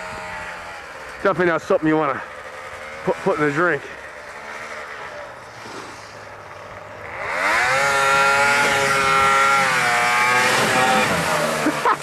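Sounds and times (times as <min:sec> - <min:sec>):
snowmobile engine revving: 0:00.0 - 0:12.0.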